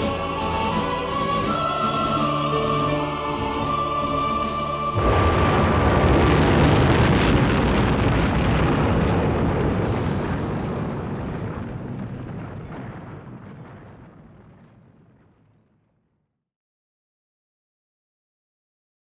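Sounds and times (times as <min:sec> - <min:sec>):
choral music: 0:00.0 - 0:07.1
heavy rumbling roar: 0:00.0 - 0:14.7.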